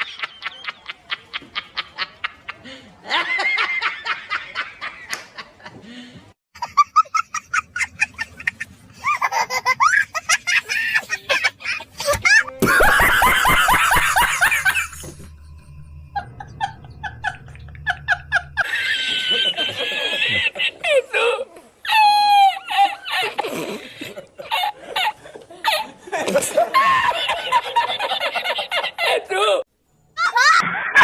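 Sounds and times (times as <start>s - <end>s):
people laughing: 0.0s - 6.0s, 6.6s - 29.6s.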